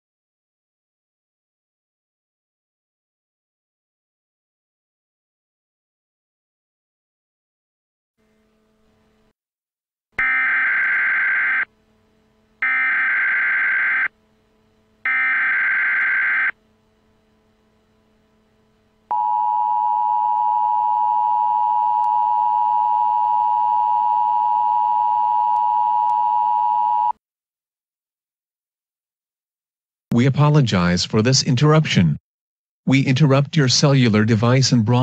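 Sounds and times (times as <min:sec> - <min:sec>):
warbling data tone bursts: 0:10.2 - 0:11.7, 0:12.6 - 0:14.1, 0:15.1 - 0:16.6
steady two-tone attention signal: 0:19.1 - 0:27.1.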